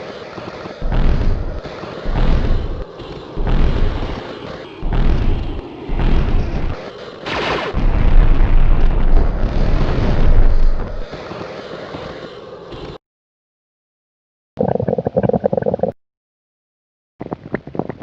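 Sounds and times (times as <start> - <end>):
hissing electrical zap: 0.0 - 13.0
low crackling electrical rumble: 0.8 - 11.1.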